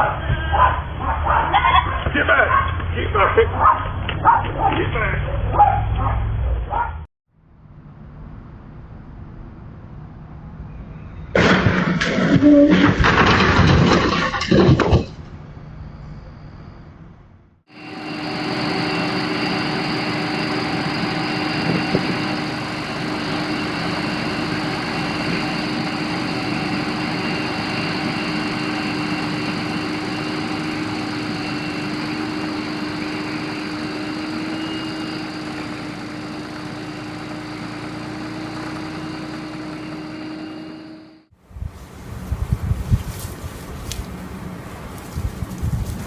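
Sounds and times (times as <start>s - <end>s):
engine droning: 15.3s - 46.0s.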